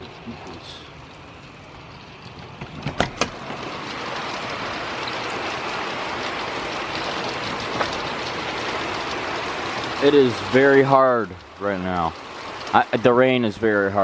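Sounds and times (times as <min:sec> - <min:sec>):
heavy rain hissing: 0:00.0 - 0:14.0.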